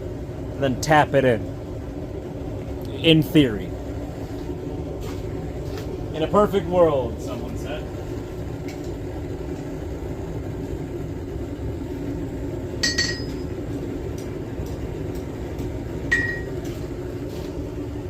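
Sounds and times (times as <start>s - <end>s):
steel striking steel clinks: 12.8s - 13.5s, 16.1s - 16.5s.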